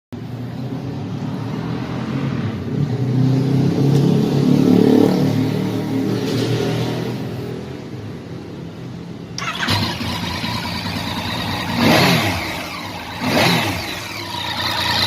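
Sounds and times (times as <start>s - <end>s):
motorcycle engine running: 9.4s - 15.0s.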